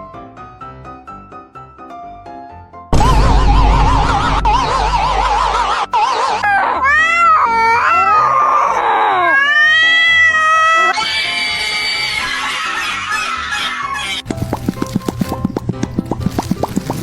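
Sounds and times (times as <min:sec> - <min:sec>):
music: 0:00.0 - 0:17.0
wavering tone: 0:03.0 - 0:06.0
cat wailing meows: 0:06.5 - 0:14.2.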